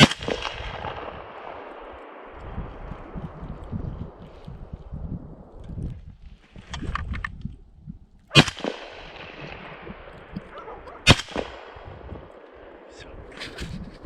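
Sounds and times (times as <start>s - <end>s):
rifle shots: 0.0s - 4.5s, 8.3s - 13.4s
long rolling echo: 0.0s - 6.2s, 8.3s - 13.4s.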